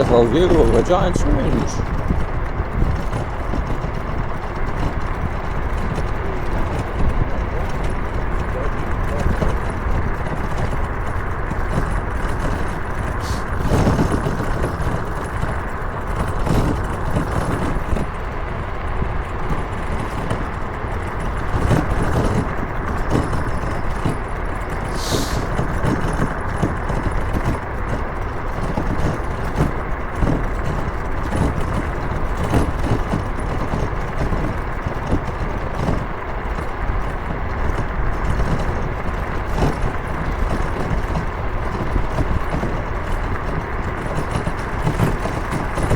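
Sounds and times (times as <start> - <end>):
motorcycle engine and road noise: 0.0 - 45.9
brief sharp hiss: 24.9 - 25.5.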